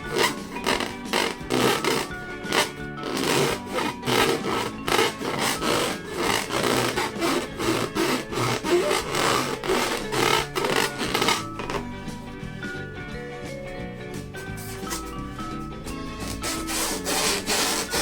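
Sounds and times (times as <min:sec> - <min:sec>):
balloons rubbed and squeezed: 0:00.0 - 0:11.9, 0:15.9 - 0:18.0
background music: 0:00.0 - 0:18.0.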